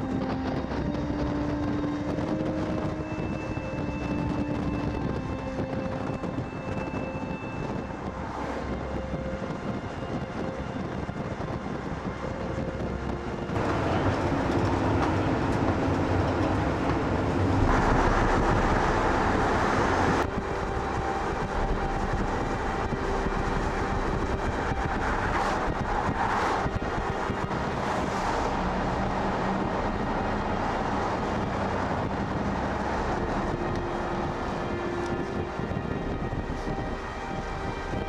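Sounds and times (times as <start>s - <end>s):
vehicle driving rumble: 12.1s - 37.8s.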